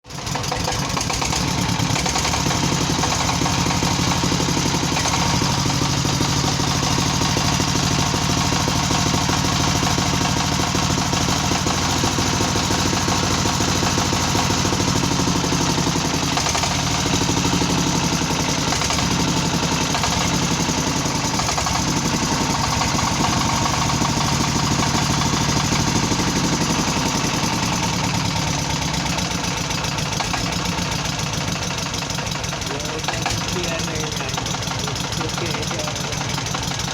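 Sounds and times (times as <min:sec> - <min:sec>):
diesel engine knocking: 0:00.0 - 0:36.9.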